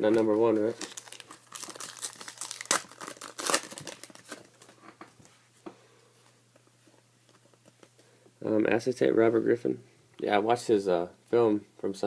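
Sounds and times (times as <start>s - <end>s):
wrapper crinkling and tearing: 0.1s - 4.7s.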